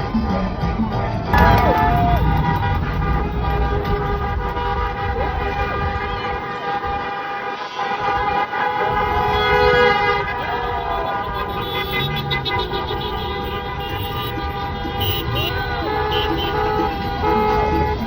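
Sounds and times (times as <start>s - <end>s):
car horns honking: 0.0s - 18.0s.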